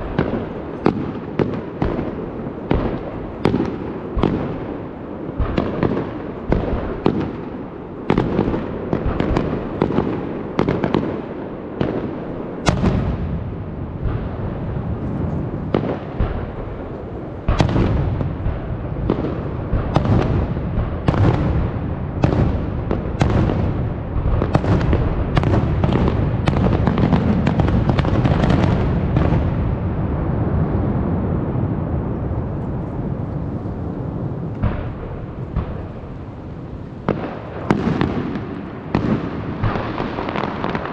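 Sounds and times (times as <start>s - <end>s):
fireworks bangs: 0.0s - 40.9s
low rumble: 12.9s - 23.0s.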